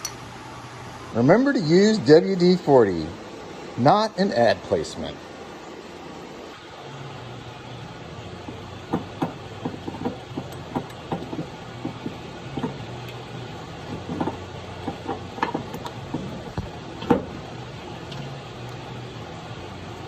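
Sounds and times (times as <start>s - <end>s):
low hum: 2.7s - 20.0s
hand tools clicking on metal: 8.5s - 18.3s.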